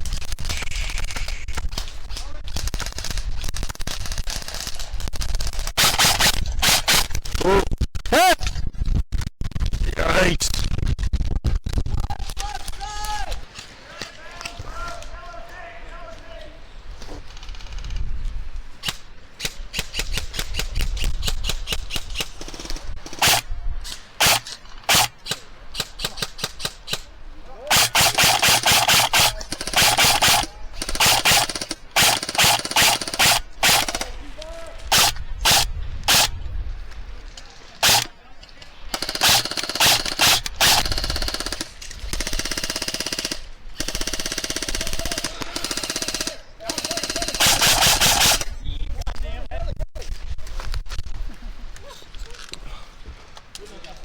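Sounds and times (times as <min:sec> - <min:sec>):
loud sharp cracks: 0:00.3 - 0:07.3, 0:18.8 - 0:27.1, 0:27.7 - 0:34.2, 0:34.8 - 0:36.3, 0:37.8 - 0:38.1, 0:38.9 - 0:48.5
airsoft guns firing: 0:00.4 - 0:07.2, 0:18.8 - 0:34.2, 0:34.9 - 0:36.3, 0:37.8 - 0:38.2, 0:38.9 - 0:48.5
loud gunshots: 0:05.8 - 0:07.1, 0:22.4 - 0:23.5, 0:24.2 - 0:27.1, 0:27.7 - 0:34.2, 0:34.9 - 0:36.3, 0:37.8 - 0:38.1, 0:39.0 - 0:48.5.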